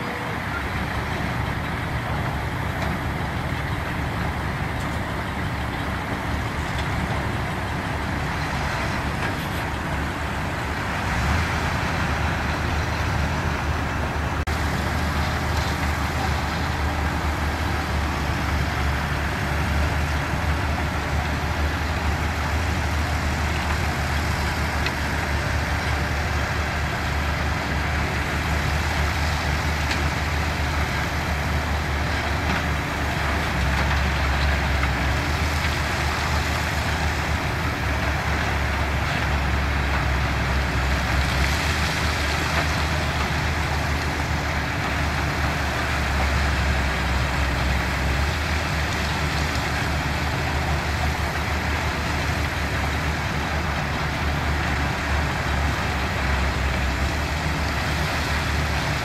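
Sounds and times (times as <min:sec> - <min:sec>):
heavy machinery diesel engines rumbling: 0:00.0 - 0:59.0.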